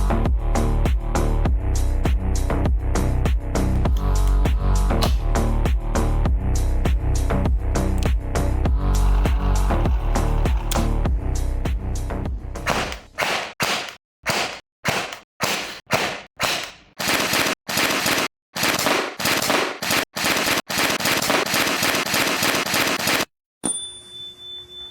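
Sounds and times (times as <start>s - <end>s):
automatic gunfire: 12.7s - 23.3s.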